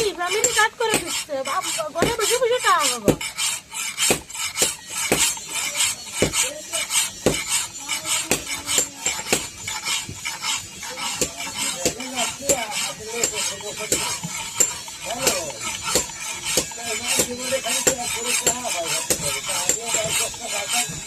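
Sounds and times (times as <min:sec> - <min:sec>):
blade scraping hiss: 0:00.0 - 0:21.0
knife sharpening strokes: 0:00.0 - 0:21.0.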